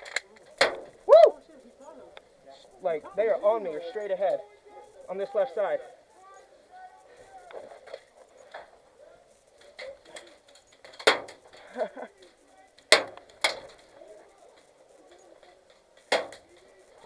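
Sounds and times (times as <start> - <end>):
faint distant shout: 1.0 - 1.6, 3.1 - 7.8
airsoft gun shots: 11.0 - 11.4.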